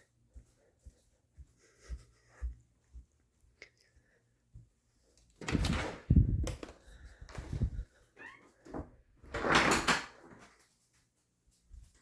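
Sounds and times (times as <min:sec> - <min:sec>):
door opening and closing: 0:05.4 - 0:06.7, 0:07.3 - 0:10.3
door knocks and rattling: 0:08.8 - 0:10.2.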